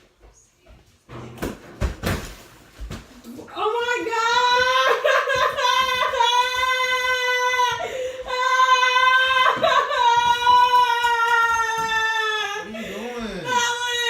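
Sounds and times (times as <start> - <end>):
woman's high-pitched wail: 3.8 - 12.7
woman breathing: 7.8 - 8.3, 12.7 - 13.4.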